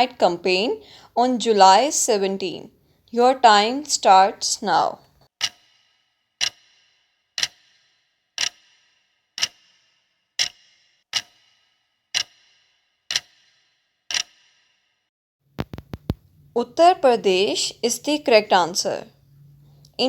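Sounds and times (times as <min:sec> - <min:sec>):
timer ticking: 0:05.4 - 0:14.7.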